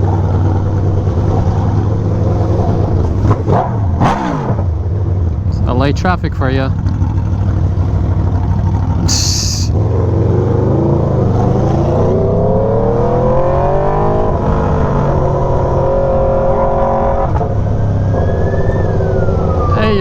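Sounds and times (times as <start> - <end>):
motorcycle engine accelerating: 0.0 - 20.0
short hiss: 9.1 - 9.7.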